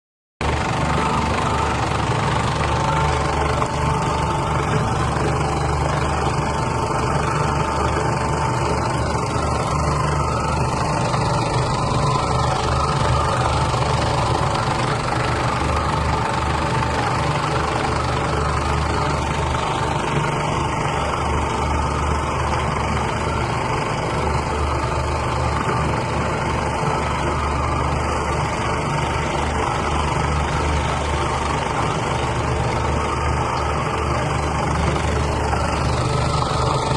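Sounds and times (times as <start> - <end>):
meat grinder motor hum: 0.4 - 36.9.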